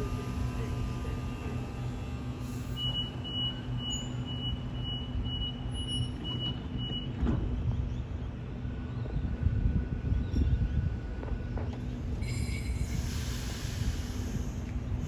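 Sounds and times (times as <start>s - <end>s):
electric train humming: 0.0s - 3.8s.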